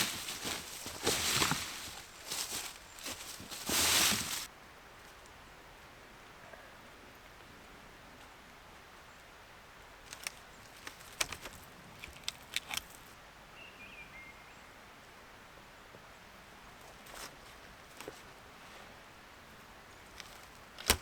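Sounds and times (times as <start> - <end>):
sharp clicks and cracks: 10.1 - 13.0, 20.2 - 21.0
faint chirp-like tone: 13.5 - 14.9.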